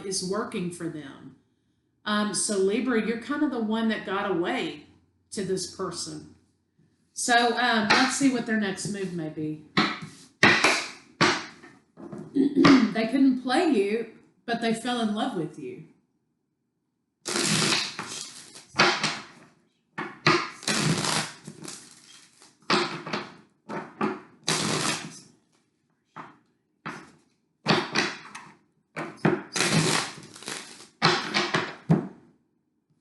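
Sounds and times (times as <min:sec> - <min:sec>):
cards shuffling and slapping: 0:09.8 - 0:11.7, 0:17.3 - 0:25.2, 0:26.2 - 0:32.2.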